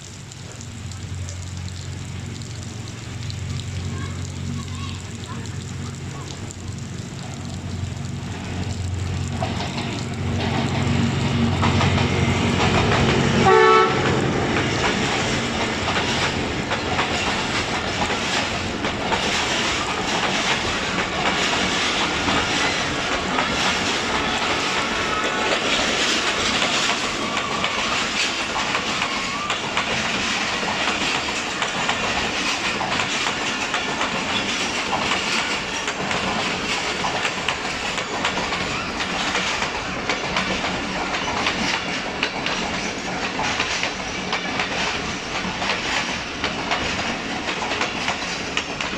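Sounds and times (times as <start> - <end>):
heavy rain: 0.0 - 48.9
locomotive engine running: 0.0 - 48.9
train wheels clattering over rails: 2.2 - 48.9
train horn blast: 13.3 - 14.5.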